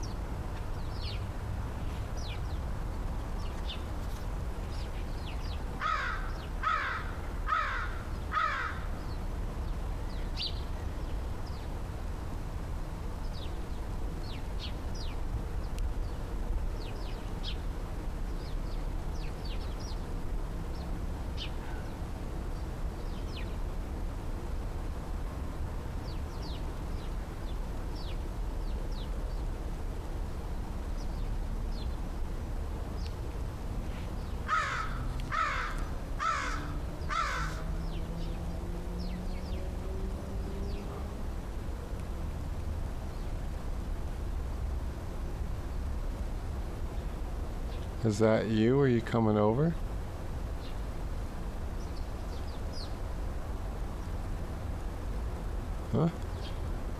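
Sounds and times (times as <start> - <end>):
crow cawing: 5.8 - 9.0, 34.5 - 37.7.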